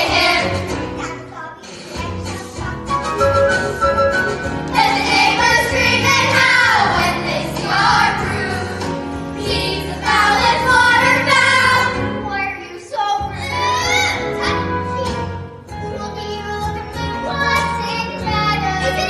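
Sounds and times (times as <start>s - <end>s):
children singing: 0.0s - 1.0s, 4.7s - 12.2s
instrumental accompaniment: 0.0s - 12.5s.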